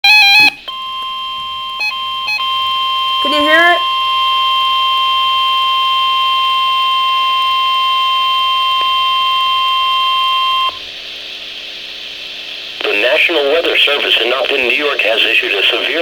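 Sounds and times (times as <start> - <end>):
steady high alarm tone: 0.0 - 10.8
radio hiss: 10.8 - 16.0.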